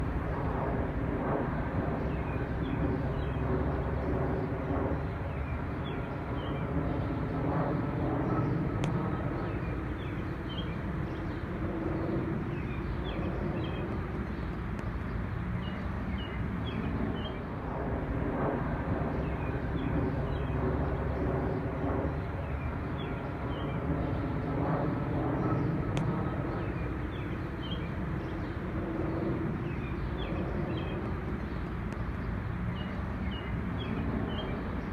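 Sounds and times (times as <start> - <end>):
aircraft engines droning: 0.0 - 34.9
small birds chirping: 5.0 - 17.4, 25.4 - 34.9.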